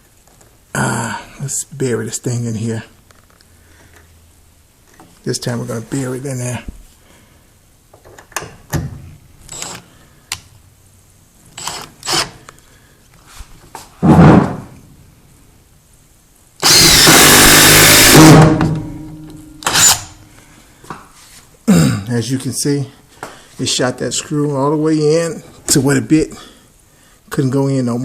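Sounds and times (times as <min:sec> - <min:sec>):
impact driver hammering: 0:16.6 - 0:20.1.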